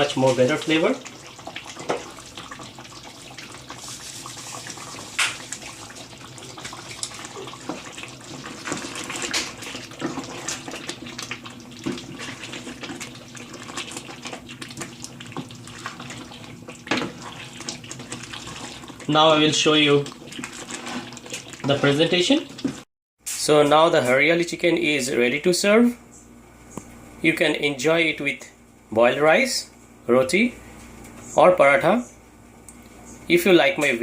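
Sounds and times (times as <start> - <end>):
gravy simmering and bubbling: 0.0 - 22.9.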